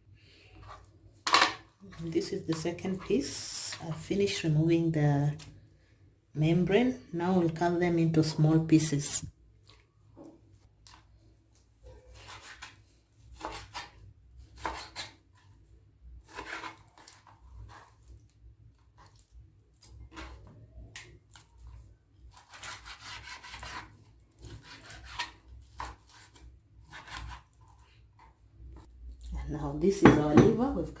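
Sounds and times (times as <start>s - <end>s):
knife slicing liver: 12.0s - 15.6s, 16.2s - 18.2s, 19.8s - 28.3s.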